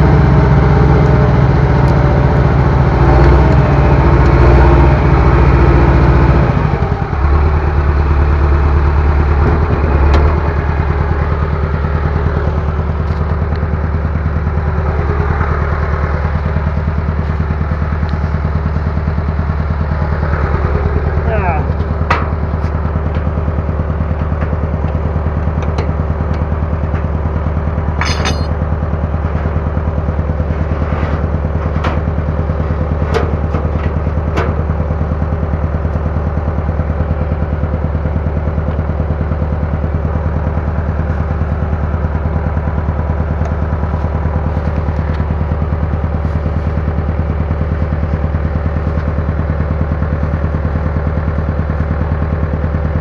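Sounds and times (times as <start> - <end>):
bulldozer diesel engine running: 0.0 - 53.0
sharp metal clanks: 28.0 - 28.7.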